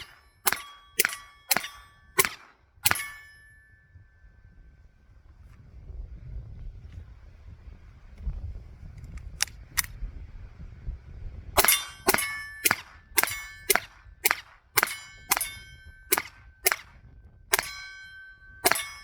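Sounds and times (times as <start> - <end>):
pistol shots: 0.0 - 3.2, 11.6 - 16.9, 18.6 - 19.0
ringing tone: 2.8 - 4.6, 14.8 - 16.7, 17.5 - 19.0.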